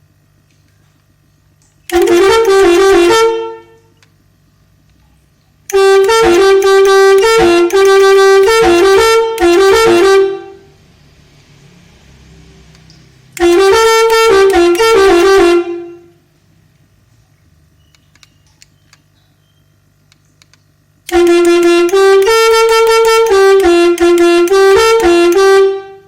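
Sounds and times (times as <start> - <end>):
multi-tune horn melodies: 1.9 - 4.0, 5.7 - 10.8, 13.3 - 16.3, 21.0 - 26.0.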